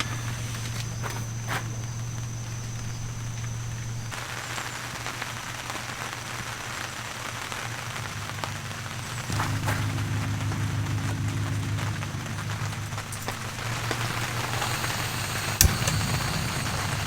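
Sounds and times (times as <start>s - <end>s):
rain pattering: 0.0s - 17.0s
steady low hum: 7.3s - 17.0s.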